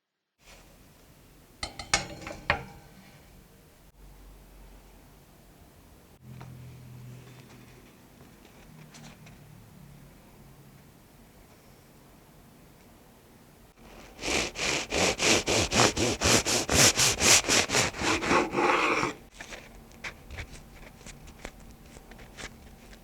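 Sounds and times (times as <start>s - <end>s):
rhythmic scraping strokes: 13.8s - 19.1s.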